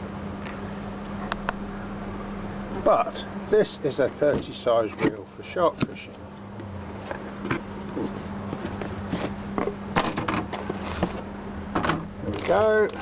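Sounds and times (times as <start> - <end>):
steady low hum: 0.0 - 13.0
packaging scrapes and rustles: 10.0 - 11.2, 12.2 - 13.0.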